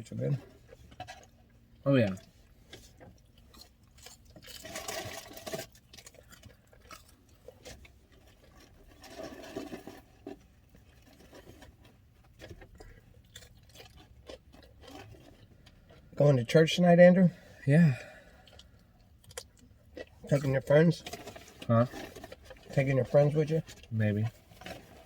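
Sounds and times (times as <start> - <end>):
chewing crunchy fried food: 0.4 - 16.2, 17.3 - 25.0.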